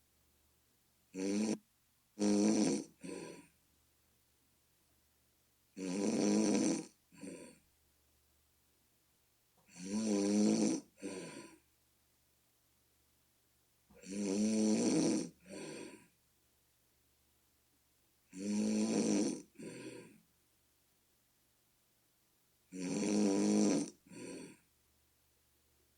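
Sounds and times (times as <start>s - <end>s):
person snoring: 1.1s - 1.6s, 2.2s - 3.5s, 5.8s - 7.6s, 9.7s - 11.6s, 14.0s - 16.1s, 18.3s - 20.2s, 22.7s - 24.6s.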